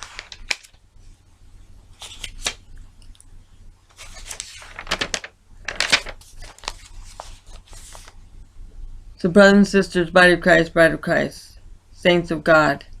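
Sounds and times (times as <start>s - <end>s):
paper rustling: 0.0s - 0.8s, 1.9s - 2.6s, 3.9s - 8.2s
faint low hum: 0.0s - 13.0s.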